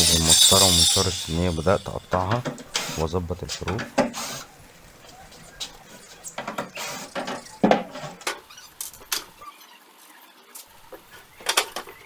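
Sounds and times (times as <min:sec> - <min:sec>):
tools and wood squeaking and scraping: 0:06.1 - 0:09.7.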